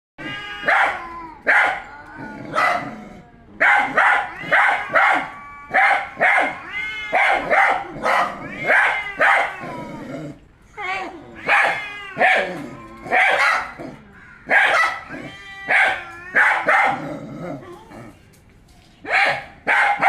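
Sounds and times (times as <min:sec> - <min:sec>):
dog barking: 0:00.6 - 0:01.8, 0:02.5 - 0:03.0, 0:03.6 - 0:09.6, 0:11.5 - 0:17.0, 0:19.1 - 0:20.0.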